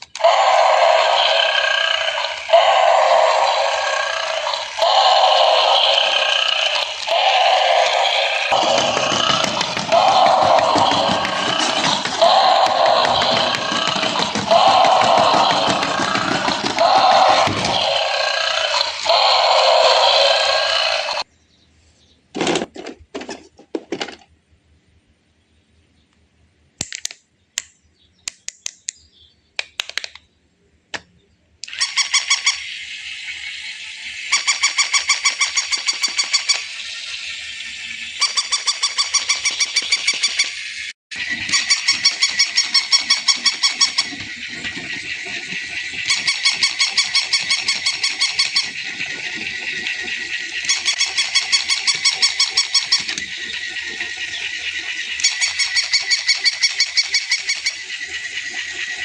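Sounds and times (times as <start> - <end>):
toy clicks: 0.0 - 21.2, 31.6 - 40.7, 41.4 - 59.0.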